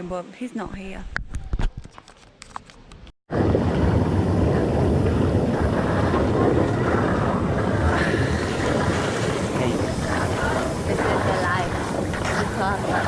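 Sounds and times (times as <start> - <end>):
deep steady rushing noise: 3.3 - 13.0.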